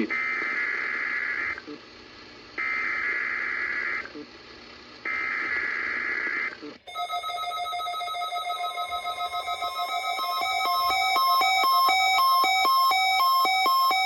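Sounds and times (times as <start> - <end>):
electronic music with steady beat: 8.4 - 14.0.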